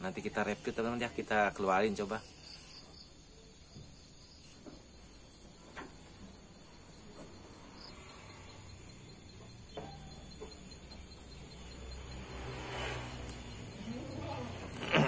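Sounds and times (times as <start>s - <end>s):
faint chirping: 0.0s - 15.0s
high insect drone: 0.0s - 15.0s.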